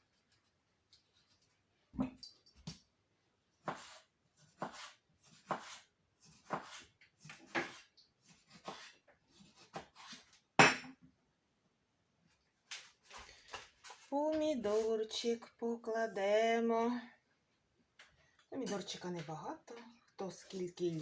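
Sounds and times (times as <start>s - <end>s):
knife slicing on board: 3.7s - 10.3s.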